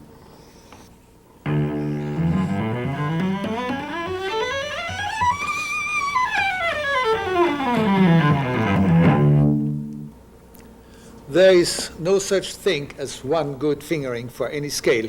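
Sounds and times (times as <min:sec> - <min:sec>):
cello bowing a scale: 0:01.5 - 0:10.2.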